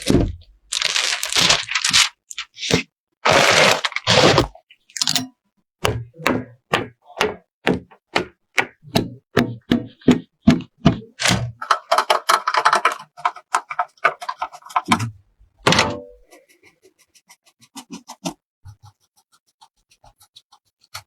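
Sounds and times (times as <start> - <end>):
hard parts knocking and clicking: 9.4 - 16.2.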